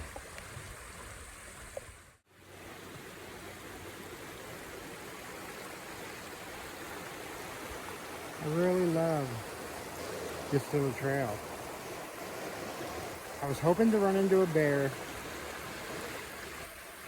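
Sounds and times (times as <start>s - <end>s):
running water rushing: 0.0s - 17.0s.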